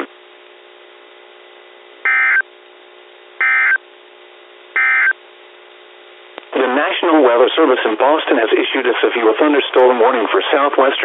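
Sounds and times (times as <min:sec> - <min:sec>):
faint hum: 0:00.0 - 0:11.0
receiver hiss: 0:00.0 - 0:11.0
digital data tone bursts: 0:02.1 - 0:02.4, 0:03.4 - 0:03.8, 0:04.8 - 0:05.2.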